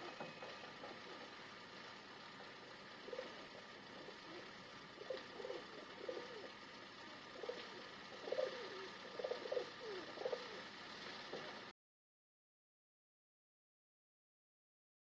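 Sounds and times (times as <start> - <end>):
pigeons cooing: 0.0 - 1.6, 2.2 - 11.7
steady background hiss: 0.0 - 11.7.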